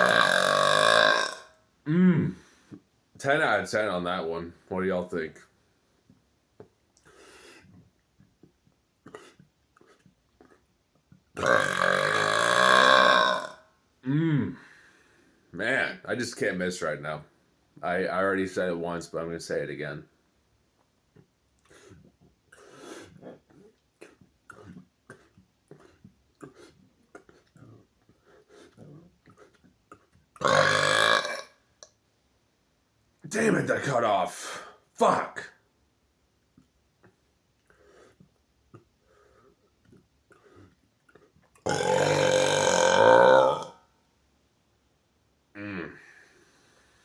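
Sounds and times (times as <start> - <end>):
man burping: 0.0 - 2.4, 11.4 - 14.6, 29.9 - 31.6, 41.6 - 43.8, 45.5 - 46.1.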